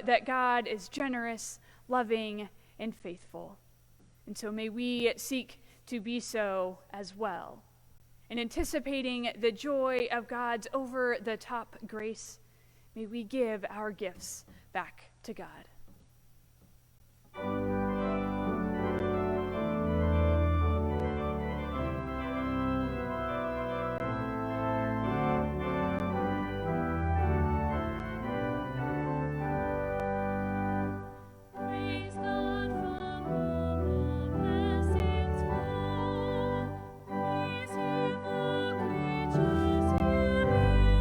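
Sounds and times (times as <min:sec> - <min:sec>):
organ playing slow chords: 0:17.3 - 0:41.0
wavering vibrato melody: 0:39.2 - 0:41.0.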